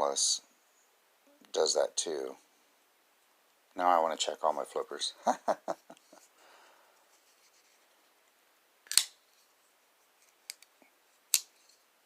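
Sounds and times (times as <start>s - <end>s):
pocket knife snapping open: 8.9s - 9.1s.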